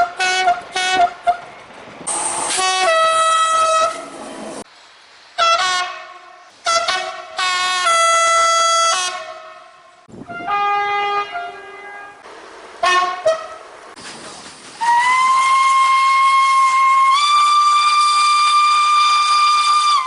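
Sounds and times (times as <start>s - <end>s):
train horn blasts: 0.0s - 1.4s, 2.1s - 4.0s, 5.4s - 12.2s, 12.8s - 13.6s
high train whistle: 2.1s - 4.1s, 12.8s - 13.6s, 14.8s - 20.0s
hiss: 14.0s - 19.4s.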